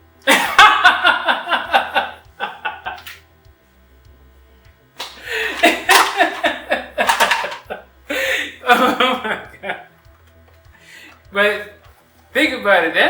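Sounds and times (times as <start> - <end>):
men laughing: 0.3 - 3.0, 5.2 - 9.9.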